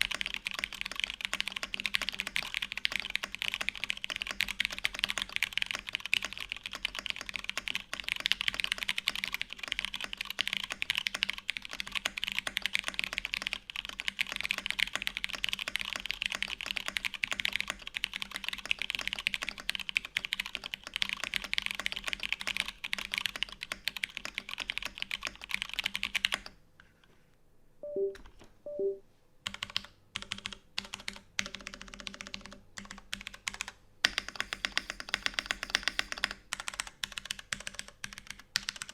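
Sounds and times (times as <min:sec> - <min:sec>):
mechanical keyboard typing: 0:00.0 - 0:26.6, 0:27.8 - 0:35.4, 0:36.1 - 0:38.9
short tones: 0:27.8 - 0:29.0.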